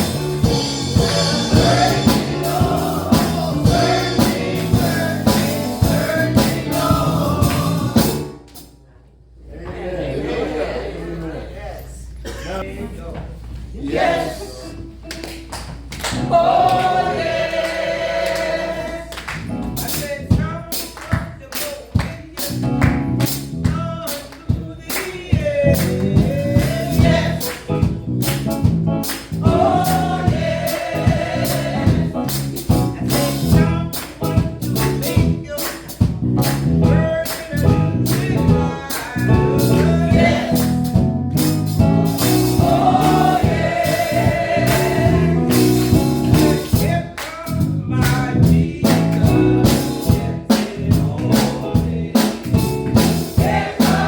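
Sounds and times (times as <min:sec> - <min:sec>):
bass and drums: 0:00.0 - 0:08.4, 0:19.4 - 0:21.0, 0:22.4 - 0:54.0
gospel voices singing: 0:00.0 - 0:08.5, 0:13.8 - 0:14.9, 0:16.0 - 0:23.1, 0:23.7 - 0:54.0.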